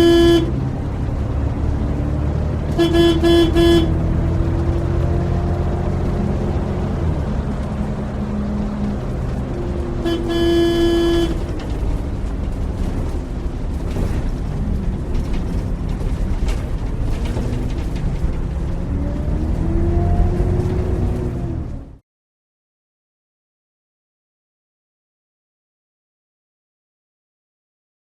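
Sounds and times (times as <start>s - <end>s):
vehicle horn: 0.0s - 0.7s, 2.7s - 4.2s, 10.0s - 11.7s
bus engine rumbling: 0.0s - 22.0s.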